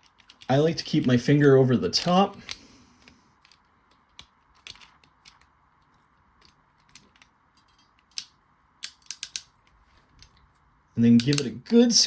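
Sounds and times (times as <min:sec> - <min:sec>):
crimping tool clicks: 0:08.1 - 0:09.5, 0:11.2 - 0:11.6.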